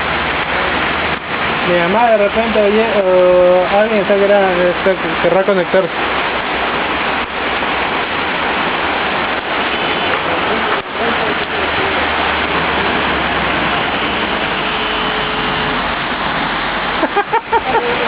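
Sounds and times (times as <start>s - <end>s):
rain falling steadily: 0.0s - 18.0s.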